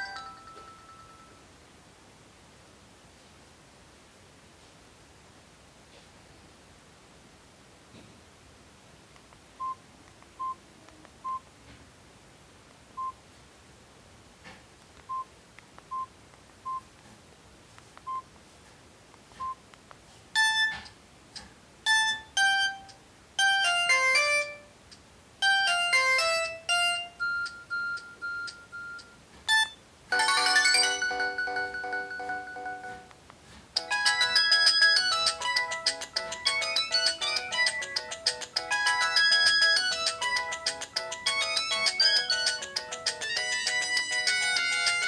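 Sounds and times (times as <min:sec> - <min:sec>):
phone ringtone melody: 0:00.0 - 0:01.4, 0:20.4 - 0:20.8, 0:21.9 - 0:24.7, 0:25.4 - 0:33.1, 0:33.8 - 0:45.0
phone keypad beeps: 0:09.6 - 0:09.8, 0:11.2 - 0:11.4, 0:15.1 - 0:15.3, 0:20.4 - 0:20.9, 0:21.9 - 0:23.6, 0:26.8 - 0:33.1.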